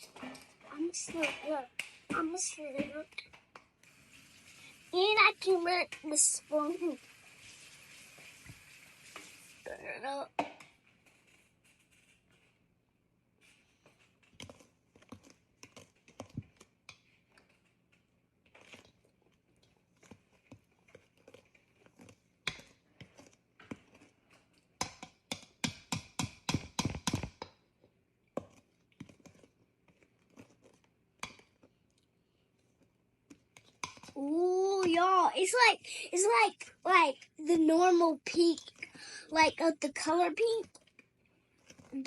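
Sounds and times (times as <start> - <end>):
spoon scraping and knocking bowl: 20.1 - 27.6.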